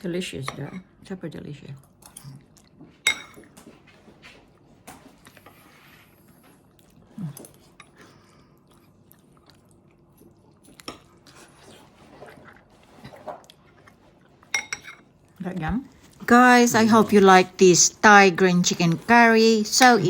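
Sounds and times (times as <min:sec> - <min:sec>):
person chewing: 0:06.7 - 0:14.5.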